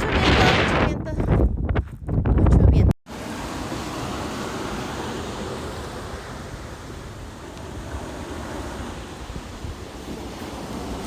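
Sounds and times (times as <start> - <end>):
wind buffeting microphone: 0.0 - 11.0
ocean surf: 3.1 - 11.0.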